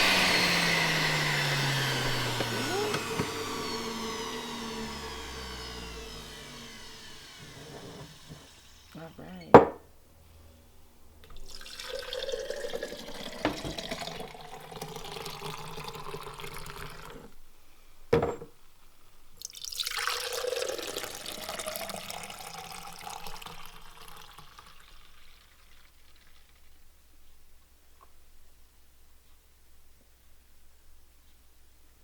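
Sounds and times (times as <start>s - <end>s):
glass knock: 9.5s - 9.8s, 18.1s - 18.5s
juice pouring into glass: 11.3s - 17.3s, 19.4s - 26.8s.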